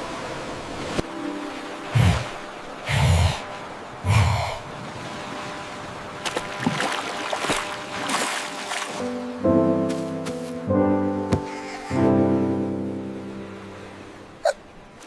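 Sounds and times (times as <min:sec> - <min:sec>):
sea water splashing: 0:00.0 - 0:09.2
string and piano music: 0:01.0 - 0:02.8, 0:07.2 - 0:15.0.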